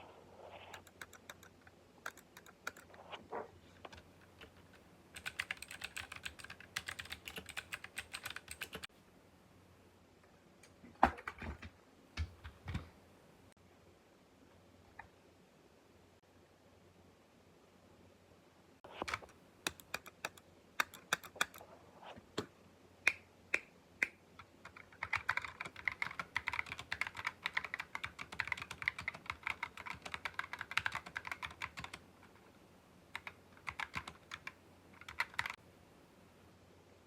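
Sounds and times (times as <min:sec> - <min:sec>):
typing on a keyboard: 0:00.7 - 0:02.9, 0:03.9 - 0:08.9, 0:19.0 - 0:21.6, 0:24.4 - 0:32.4, 0:33.1 - 0:35.6.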